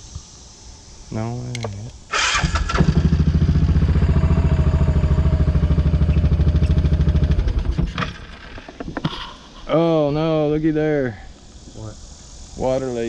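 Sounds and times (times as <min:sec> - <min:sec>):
utility vehicle engine running: 0:02.2 - 0:08.8.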